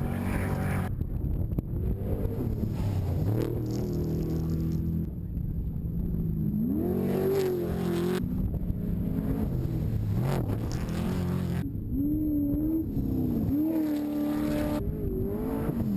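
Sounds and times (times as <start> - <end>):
truck engine revving: 1.8 - 5.1, 6.5 - 15.9.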